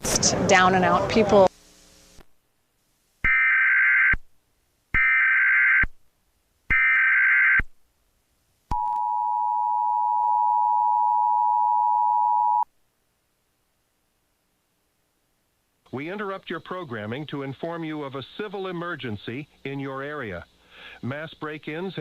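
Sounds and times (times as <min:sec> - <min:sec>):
two-tone attention signal: 0:08.8 - 0:12.6.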